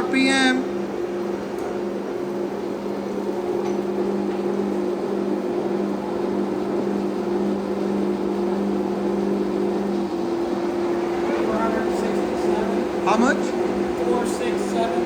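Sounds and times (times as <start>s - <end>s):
lathe running with geared hum: 0.0s - 15.0s.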